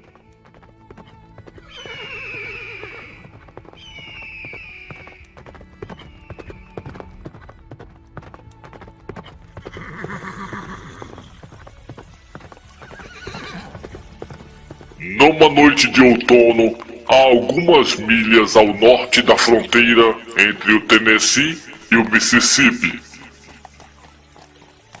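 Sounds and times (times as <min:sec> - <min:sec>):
background music: 0:00.0 - 0:25.0
horse hooves clip-clopping: 0:00.0 - 0:25.0
horse whinnying: 0:01.6 - 0:05.2, 0:09.6 - 0:11.4, 0:12.7 - 0:14.0.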